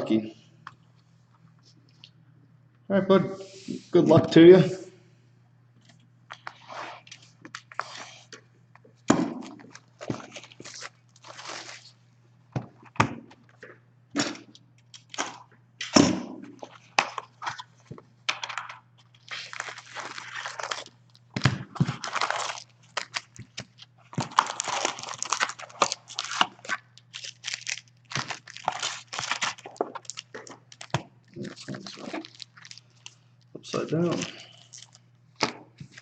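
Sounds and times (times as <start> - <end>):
plastic wrap tearing and crinkling: 9.4 - 12.0, 18.5 - 36.0.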